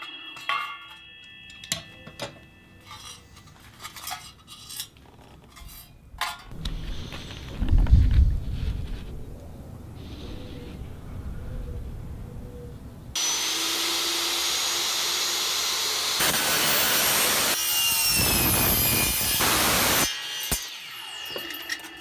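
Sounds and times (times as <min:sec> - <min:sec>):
high metallic ringing: 0:00.0 - 0:03.6, 0:17.4 - 0:22.0
saw cutting metal: 0:13.2 - 0:22.0.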